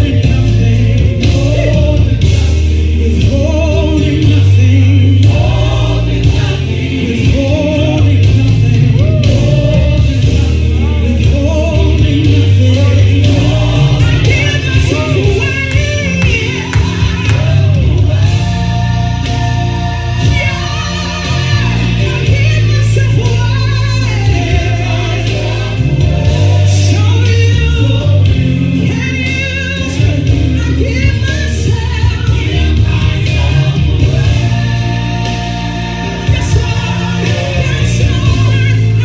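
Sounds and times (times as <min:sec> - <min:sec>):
bass notes: 0:00.0 - 0:39.0
gospel worship singing: 0:00.0 - 0:39.0
keyboard chords: 0:13.1 - 0:22.8.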